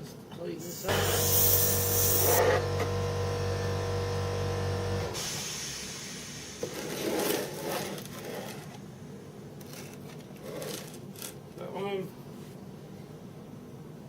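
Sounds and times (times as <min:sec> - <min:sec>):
electric motor humming: 0:00.9 - 0:05.2.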